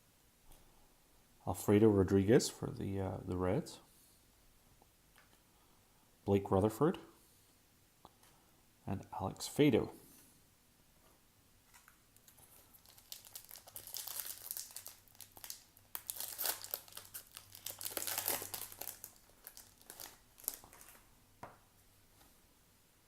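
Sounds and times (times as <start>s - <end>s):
foil wrapper tearing and crinkling: 12.2s - 21.0s.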